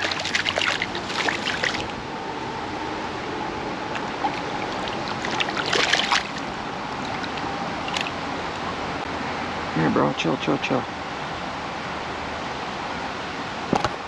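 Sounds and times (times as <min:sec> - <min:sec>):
water splashing: 0:00.0 - 0:02.0, 0:03.7 - 0:09.0
creek water running: 0:00.0 - 0:09.1.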